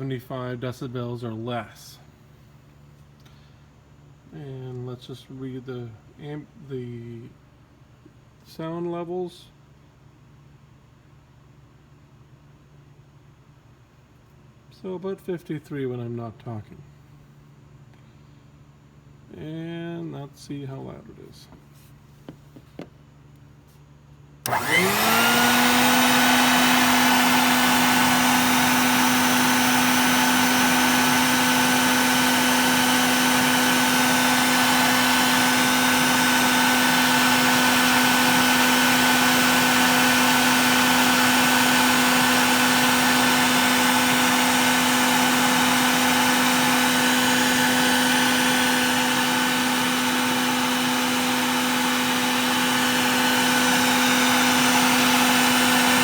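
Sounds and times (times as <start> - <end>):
shop vacuum motor running: 24.4 - 56.0.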